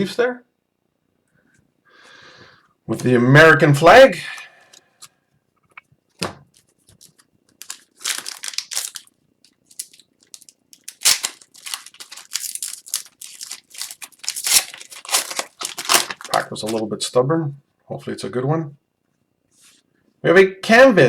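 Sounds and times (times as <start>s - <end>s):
wrapper tearing and crinkling: 6.9s - 16.9s.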